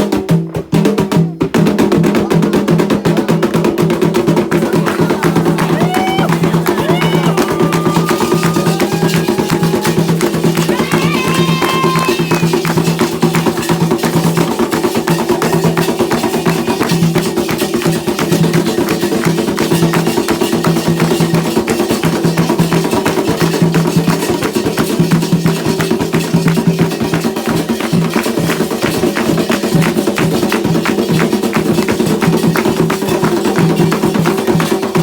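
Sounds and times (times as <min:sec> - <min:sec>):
hand drums and percussion: 0:00.0 - 0:35.0
voices: 0:04.4 - 0:14.6.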